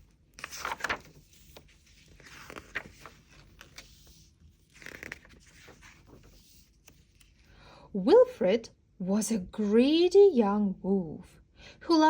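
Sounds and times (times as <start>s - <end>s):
book pages rustling: 0.0s - 7.5s.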